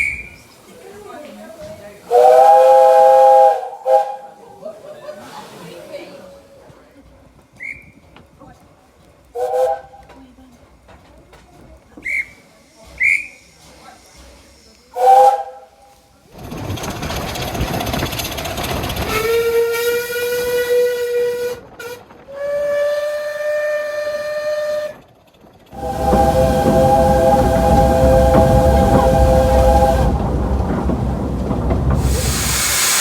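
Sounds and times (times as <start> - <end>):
low rumble of train: 0.0 - 33.0
steam locomotive whistle: 2.1 - 4.4, 9.4 - 10.0, 14.9 - 15.8, 19.1 - 25.1, 25.7 - 33.0
steam hissing: 12.0 - 20.9, 25.7 - 33.0.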